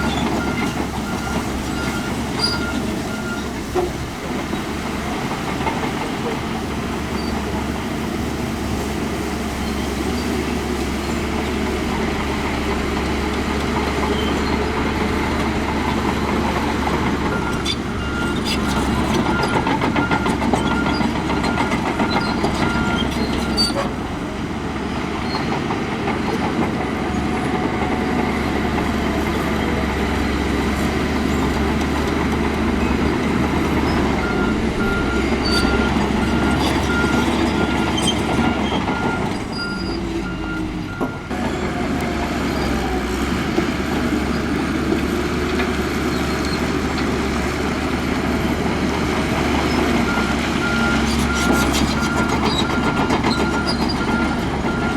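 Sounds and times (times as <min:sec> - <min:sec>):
heavy diesel machinery running: 0:00.0 - 0:54.9
reversing alarm beeping: 0:34.2 - 0:41.3.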